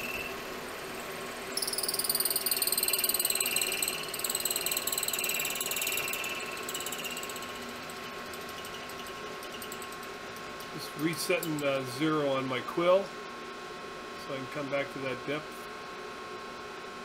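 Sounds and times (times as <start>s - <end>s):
milling machine spindle hum: 0.0s - 12.5s
end mill cutting metal whine: 2.0s - 11.6s.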